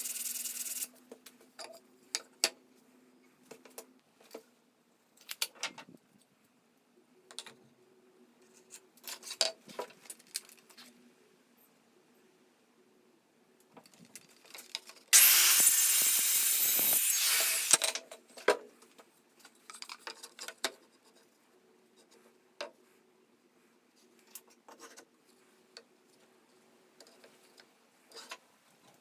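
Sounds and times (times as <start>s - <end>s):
power tool cutting wood: 15.2s - 17.8s.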